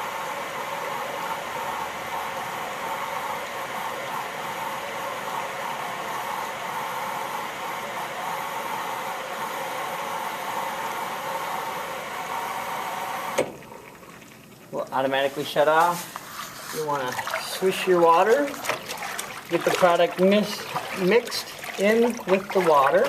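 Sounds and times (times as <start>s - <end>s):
water rushing into sink: 13.3s - 23.0s.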